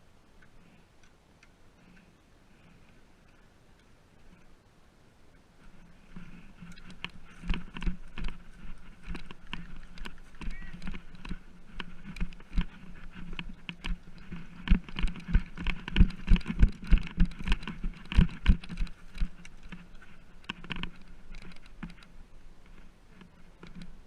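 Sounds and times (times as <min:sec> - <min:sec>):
light clicks and rustling: 0:05.6 - 0:24.0.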